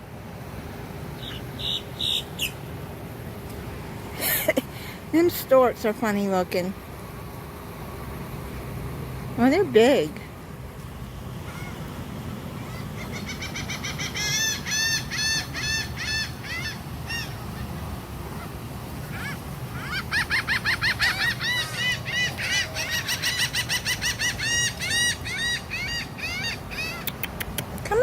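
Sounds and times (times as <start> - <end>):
water birds honking: 11.3 - 27.0.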